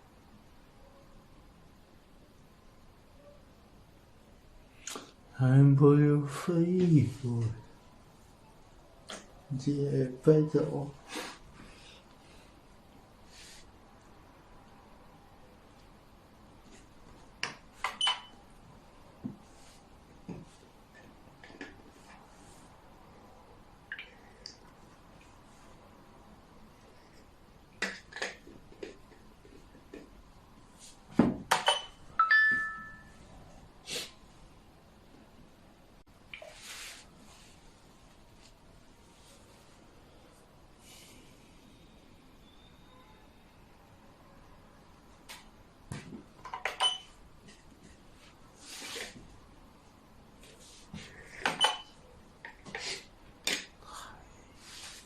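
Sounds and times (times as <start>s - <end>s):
bright ringing clink: 31.7s - 33.2s.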